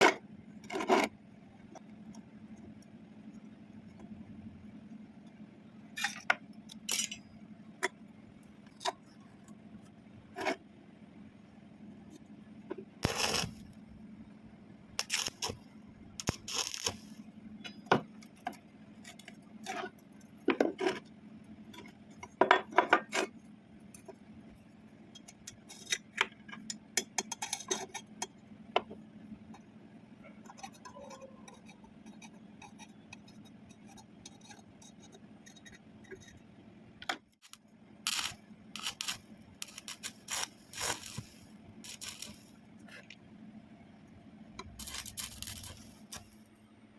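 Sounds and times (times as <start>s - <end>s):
faint steady hum: 0.0s - 46.9s
metal tubing clinking: 6.0s - 7.2s
metal scraping: 13.0s - 13.7s, 15.0s - 15.6s, 16.2s - 17.2s, 37.4s - 42.6s, 44.6s - 46.5s.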